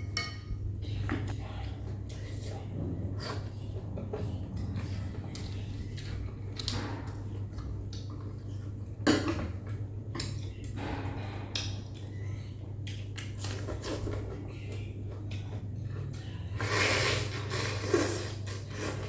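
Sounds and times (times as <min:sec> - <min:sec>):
utensils clinking against a bowl: 0:00.0 - 0:02.3
steady low hum: 0:00.0 - 0:19.0.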